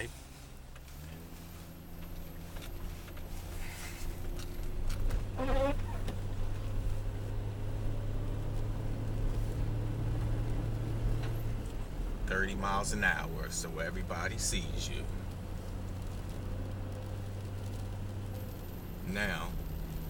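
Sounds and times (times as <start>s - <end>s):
vehicle engine humming in cabin: 0.0s - 20.0s
wavering squeak: 5.4s - 6.0s.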